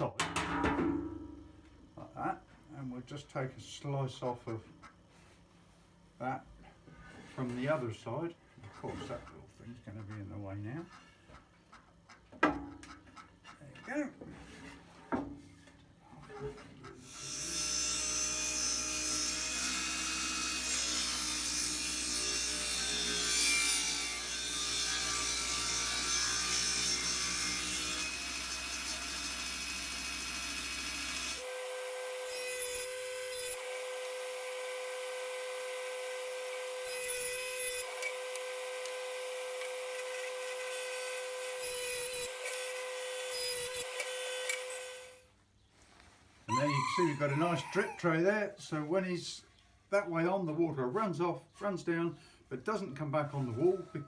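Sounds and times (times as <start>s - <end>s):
table saw cutting wood: 17.0s - 45.2s.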